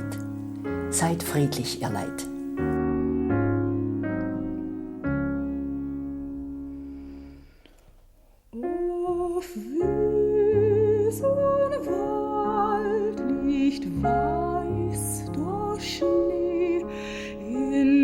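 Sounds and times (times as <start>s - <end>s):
keyboard chords: 0.0s - 7.6s
soprano singing: 8.6s - 18.0s.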